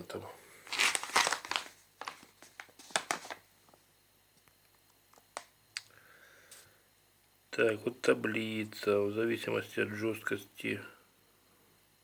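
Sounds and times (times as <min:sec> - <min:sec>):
plastic pack crinkling: 0:00.6 - 0:03.5.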